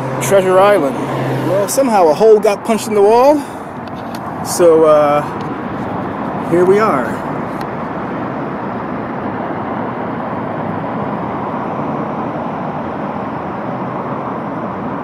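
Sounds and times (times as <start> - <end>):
road traffic rushing: 0.0 - 15.0.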